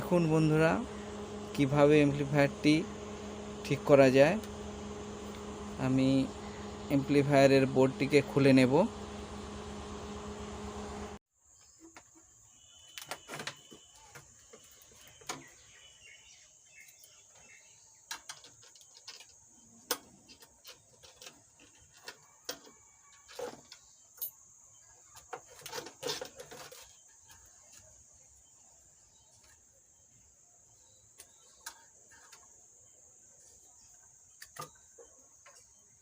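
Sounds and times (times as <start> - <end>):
clicks and knocks of tools and metal: 18.1 - 24.3.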